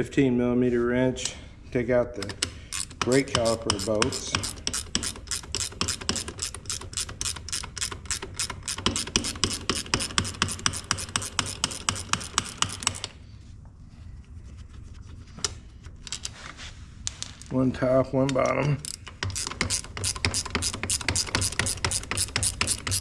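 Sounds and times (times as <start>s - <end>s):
ratcheting wrench clicking: 2.2s - 13.2s, 18.4s - 23.0s.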